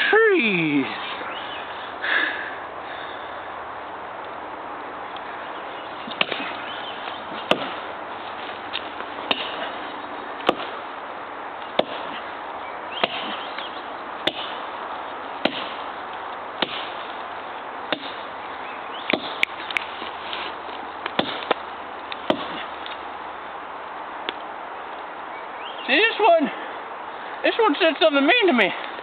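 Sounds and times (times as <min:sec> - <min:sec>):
axe chopping tree trunk: 0:06.0 - 0:08.0, 0:08.7 - 0:09.8, 0:10.4 - 0:10.9, 0:11.7 - 0:12.3, 0:13.0 - 0:14.8, 0:15.4 - 0:16.0, 0:16.6 - 0:17.2, 0:17.9 - 0:18.3, 0:19.0 - 0:19.9, 0:21.0 - 0:23.0.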